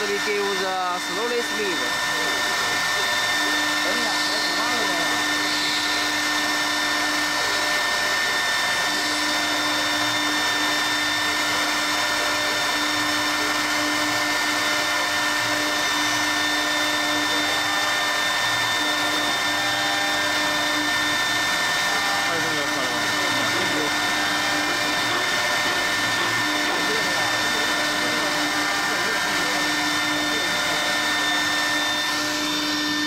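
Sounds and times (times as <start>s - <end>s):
milling machine spindle whine: 0.0s - 33.0s.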